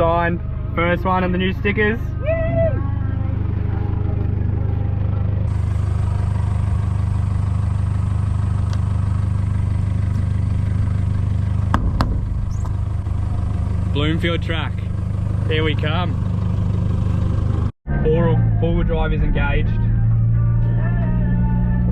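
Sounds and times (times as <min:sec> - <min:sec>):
engine droning: 0:00.0 - 0:21.9
sharp knocks: 0:11.7 - 0:12.8.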